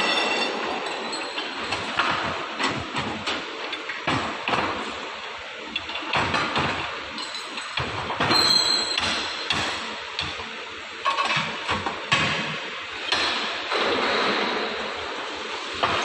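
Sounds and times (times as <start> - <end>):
short metallic rings: 0.0 - 1.6.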